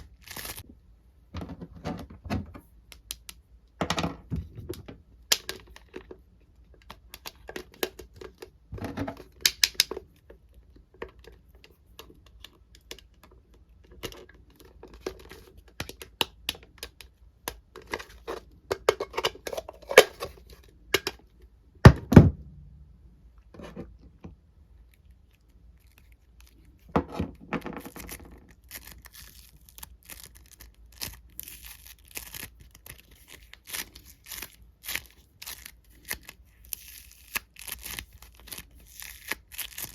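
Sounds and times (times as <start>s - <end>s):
rustling: 0.0s - 0.6s
plastic toy parts clicking: 9.3s - 10.1s.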